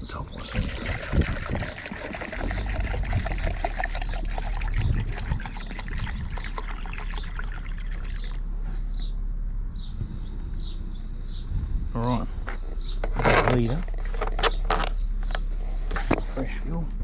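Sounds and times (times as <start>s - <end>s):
petrol pouring into a cup: 0.4s - 8.4s.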